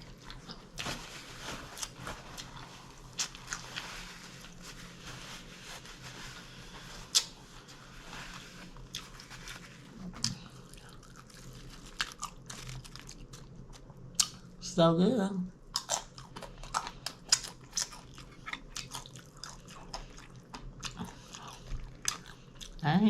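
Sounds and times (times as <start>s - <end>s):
person chewing and crunching: 0.0s - 4.7s, 7.0s - 7.8s, 8.7s - 14.5s, 15.7s - 22.8s
faint steady hum: 0.0s - 23.0s.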